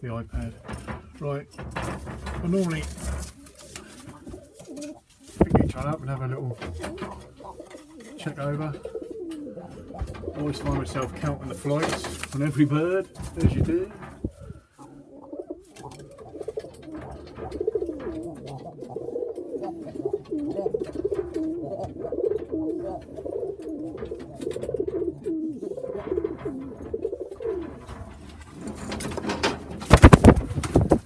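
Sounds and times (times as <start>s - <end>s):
loud clatter: 0.4s - 4.1s, 26.0s - 31.0s
pigeons cooing: 1.8s - 31.0s.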